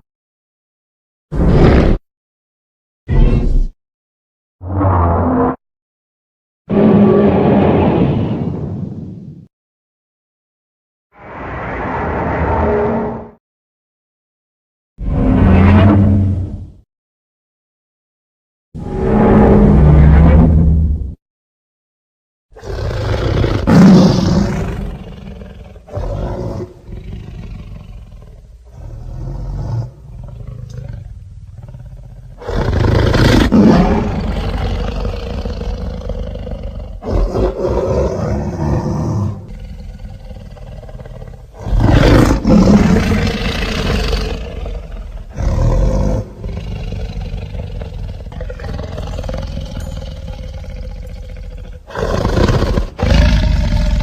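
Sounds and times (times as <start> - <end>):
monster roars: 22.6 - 54.0.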